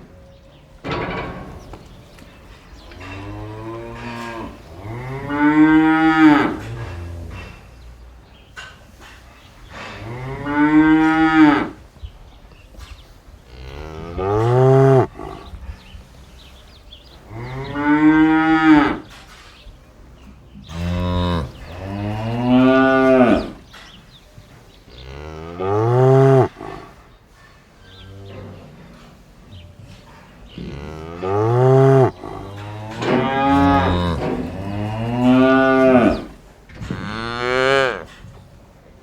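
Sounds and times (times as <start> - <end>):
cow mooing: 13.5 - 15.6, 20.7 - 23.6, 24.9 - 26.9, 30.6 - 38.1.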